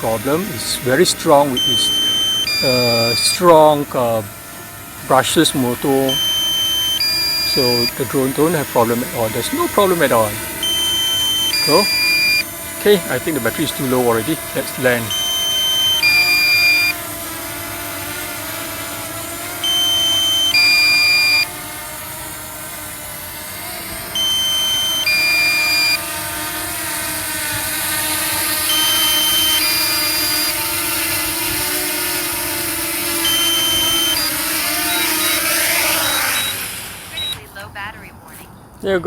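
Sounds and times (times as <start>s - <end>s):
drone propellers humming: 0.0s - 38.6s
quick short beeps: 1.5s - 3.4s, 6.1s - 8.0s, 10.6s - 12.4s, 24.2s - 26.0s, 28.7s - 30.4s, 33.2s - 37.6s
two-note electronic warning beep: 1.5s - 3.6s, 6.0s - 8.0s, 10.6s - 12.4s, 15.1s - 17.0s, 19.6s - 21.5s, 24.2s - 26.0s, 28.7s - 30.5s, 33.2s - 36.6s, 37.2s - 37.5s.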